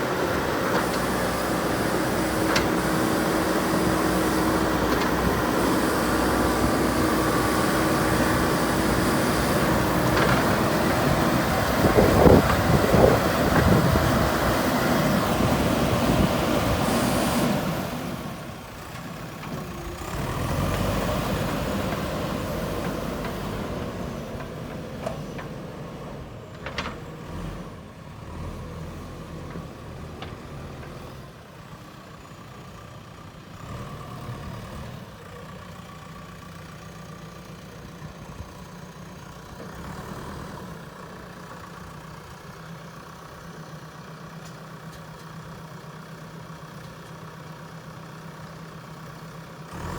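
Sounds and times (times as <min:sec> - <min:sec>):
diesel engine idling: 0:00.0 - 0:49.9.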